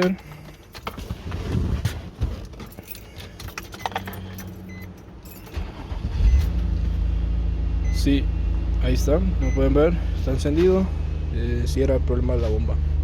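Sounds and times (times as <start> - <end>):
car engine starting and idling: 0.0 - 13.0
keys jingling: 2.3 - 6.6.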